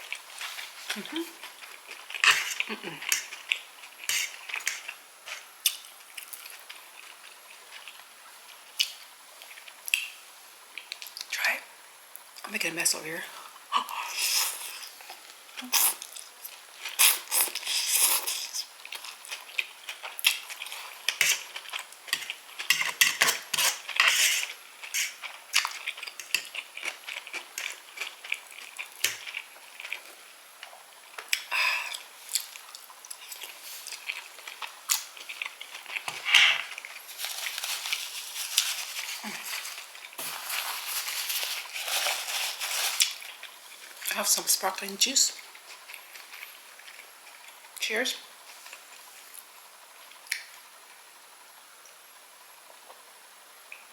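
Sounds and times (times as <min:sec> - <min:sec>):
wet chewing and mouth smacks: 0:25.1 - 0:37.1.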